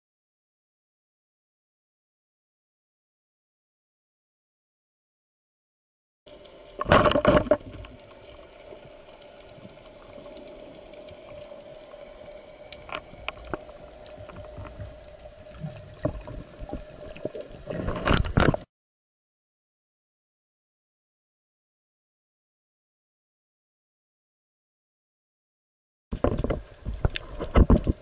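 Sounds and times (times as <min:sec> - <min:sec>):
small clicks: 0:06.3 - 0:18.6, 0:26.2 - 0:28.0
rushes of water: 0:06.3 - 0:18.7, 0:26.2 - 0:28.0
underwater steady hum: 0:06.3 - 0:18.7, 0:26.2 - 0:28.0.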